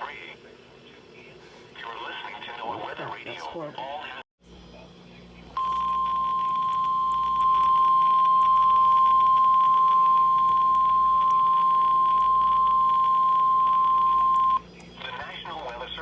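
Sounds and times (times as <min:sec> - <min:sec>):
faint radio static hiss: 0:00.0 - 0:16.0
high-pitched alarm tone: 0:05.6 - 0:14.6.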